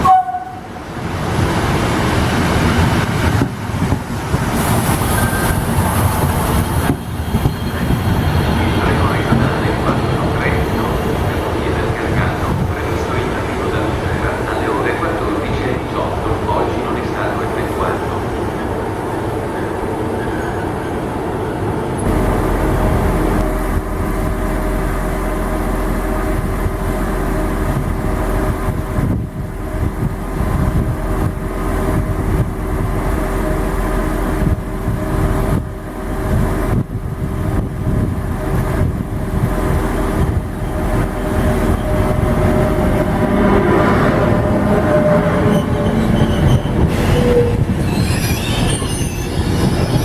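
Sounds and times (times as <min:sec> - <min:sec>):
train rumbling: 0:00.0 - 0:50.0
deep low drone: 0:22.0 - 0:45.0
steady humming tones: 0:22.0 - 0:45.0.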